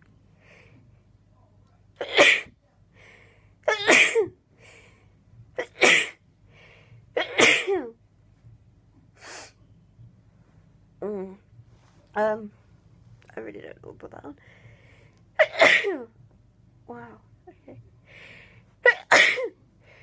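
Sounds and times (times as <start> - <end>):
person sneezing: 2.0 - 2.5, 3.7 - 4.3, 5.6 - 6.2, 15.4 - 16.0, 18.8 - 19.5.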